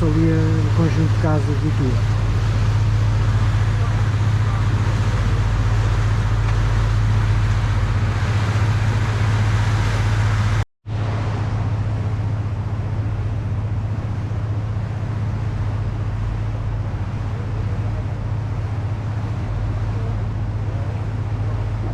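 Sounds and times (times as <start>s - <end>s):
boat engine droning: 0.0s - 21.9s.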